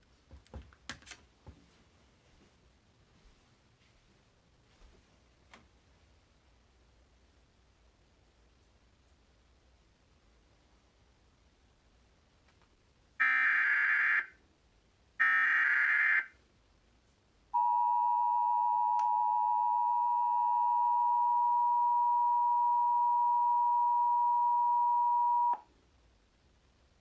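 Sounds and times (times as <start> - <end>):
two-tone attention signal: 17.6 - 25.6.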